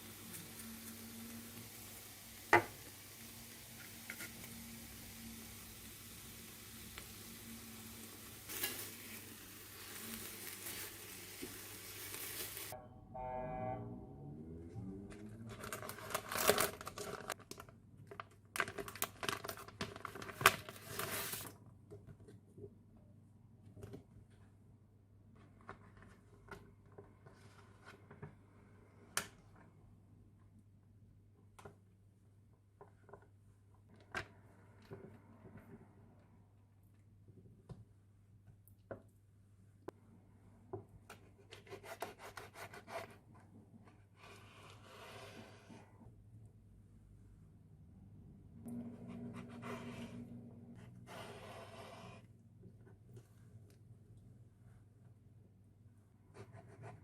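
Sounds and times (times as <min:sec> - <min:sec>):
food sizzling in a frying pan: 0:00.0 - 0:12.8
faint low hum: 0:12.8 - 0:15.9.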